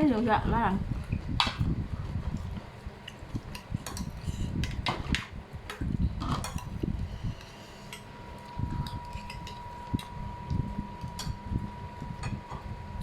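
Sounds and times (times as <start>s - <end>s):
soft chewing: 0.9s - 4.8s.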